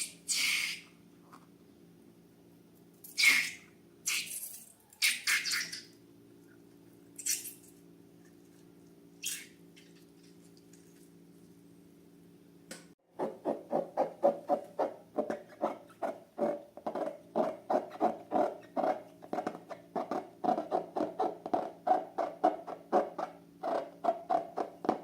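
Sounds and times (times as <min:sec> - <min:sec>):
faint steady hum: 0:00.0 - 0:13.0
slime squeezed by hand: 0:07.2 - 0:07.7, 0:09.2 - 0:09.6.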